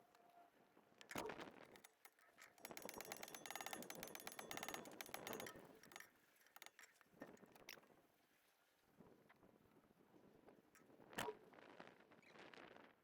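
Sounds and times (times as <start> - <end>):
ratchet wrench clicking: 1.8 - 6.9.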